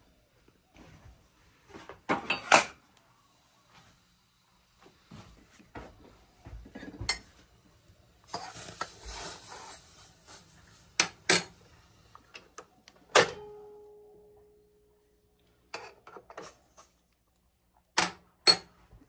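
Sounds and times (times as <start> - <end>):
dishes and utensils clattering: 2.1 - 2.8, 6.7 - 7.3, 11.0 - 11.6, 15.7 - 16.9.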